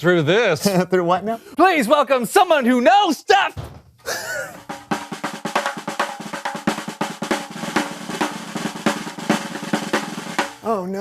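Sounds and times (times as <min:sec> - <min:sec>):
rapid snare drum rolls: 0:04.7 - 0:10.7.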